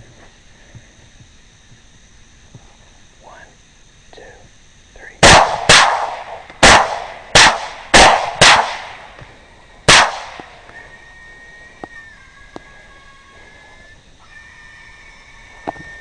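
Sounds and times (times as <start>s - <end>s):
rifle shots echoing: 5.2s - 9.1s, 9.9s - 10.6s
high squeal: 10.7s - 16.0s.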